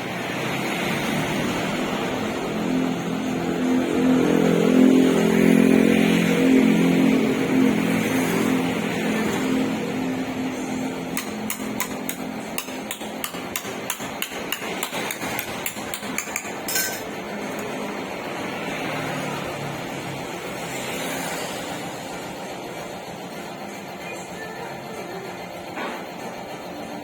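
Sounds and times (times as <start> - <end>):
hammer tapping on sheet metal: 11.1 - 17.1.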